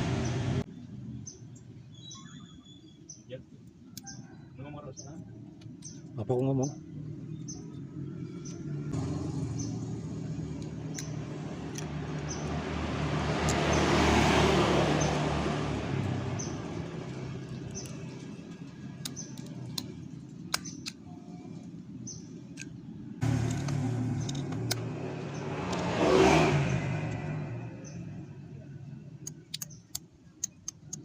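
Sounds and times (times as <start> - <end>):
vehicle passing by: 0.0 - 0.6, 8.0 - 19.2, 23.2 - 28.6
low engine hum: 0.0 - 1.2, 6.8 - 29.9
sharp clicks: 10.6 - 12.4, 19.0 - 21.0, 23.4 - 24.9, 29.2 - 31.0.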